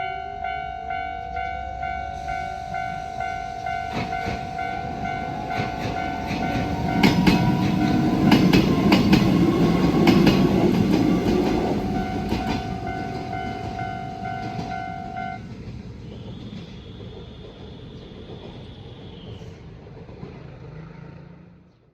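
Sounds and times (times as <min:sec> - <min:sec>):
crossing warning bell ringing: 0:00.0 - 0:15.6
low train rumble: 0:00.0 - 0:21.9
train wheels clacking over rail joints: 0:03.9 - 0:21.1.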